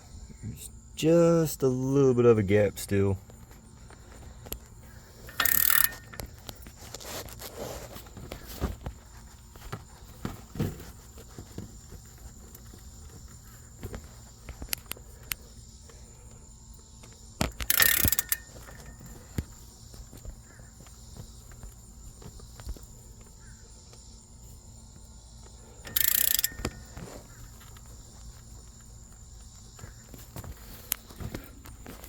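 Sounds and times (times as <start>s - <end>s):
crickets chirping: 0.0s - 32.0s
scraping rustle: 5.1s - 14.4s
hand bar clicking on lug nut: 5.3s - 6.3s, 17.4s - 19.0s, 25.9s - 27.0s.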